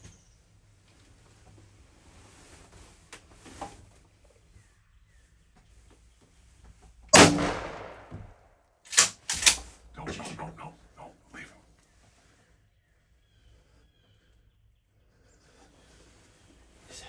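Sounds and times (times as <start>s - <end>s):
shotgun blast: 7.2s - 8.3s.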